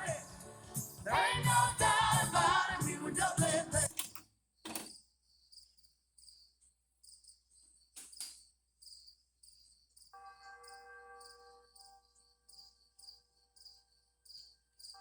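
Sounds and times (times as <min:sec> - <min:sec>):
faint cricket chirping: 0:04.0 - 0:15.0.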